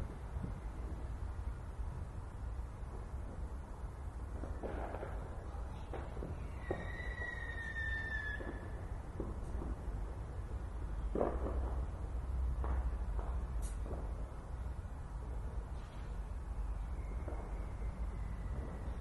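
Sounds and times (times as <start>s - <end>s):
distant fireworks bangs and crackles: 0.0s - 19.0s
firework whistle: 5.9s - 8.9s, 15.8s - 19.0s.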